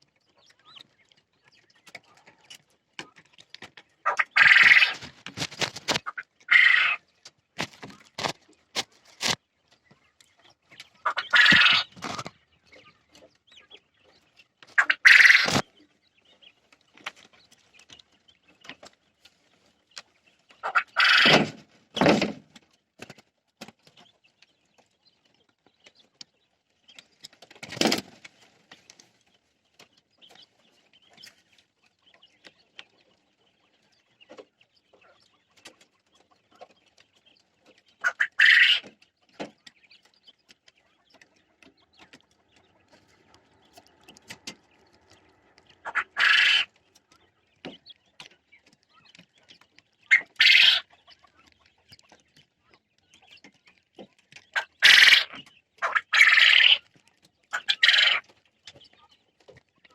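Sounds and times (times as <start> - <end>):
faint chirps and clicks: 0.0 - 21.4, 22.0 - 59.9
quail calling: 4.0 - 5.2, 5.9 - 7.0, 10.8 - 13.6, 14.7 - 15.7, 20.5 - 22.2, 38.0 - 39.0, 42.8 - 46.9, 50.0 - 51.4, 54.5 - 56.9, 57.5 - 58.3.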